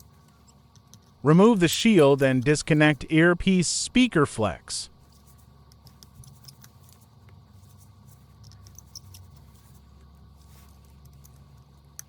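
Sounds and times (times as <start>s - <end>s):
small tools clicking and scratching: 0.0s - 2.4s, 5.1s - 12.0s
low steady hum: 0.0s - 12.0s.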